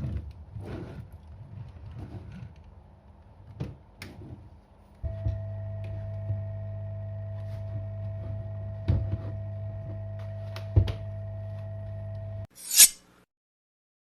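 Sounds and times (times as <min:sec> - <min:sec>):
electrical hum: 0:05.0 - 0:12.5
brief hiss: 0:12.6 - 0:13.0.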